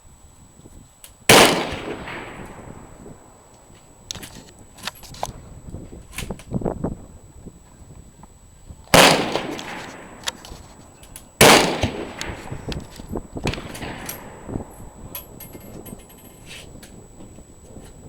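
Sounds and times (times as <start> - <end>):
rifle shots with echo: 1.3 - 5.0, 8.9 - 16.2.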